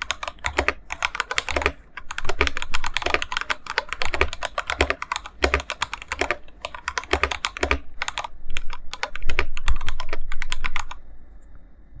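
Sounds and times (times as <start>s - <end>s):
mechanical keyboard typing: 0.0s - 11.0s.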